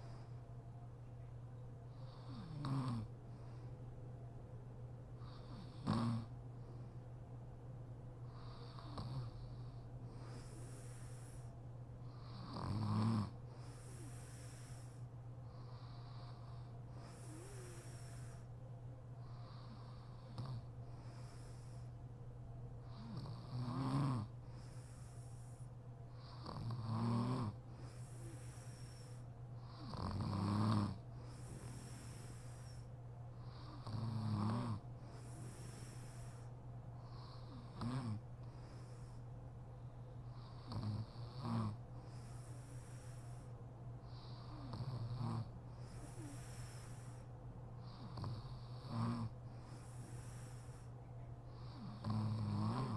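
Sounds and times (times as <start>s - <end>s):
soft breaths: 0.0s - 52.9s
steady low hum: 0.0s - 52.9s
woman snoring: 2.1s - 3.1s, 5.2s - 6.3s, 8.4s - 9.6s, 12.2s - 14.9s, 15.7s - 18.5s, 22.9s - 25.2s, 26.2s - 32.8s, 33.5s - 36.4s, 37.1s - 38.2s, 40.4s - 43.3s, 44.1s - 47.2s, 47.8s - 50.9s, 51.6s - 52.9s.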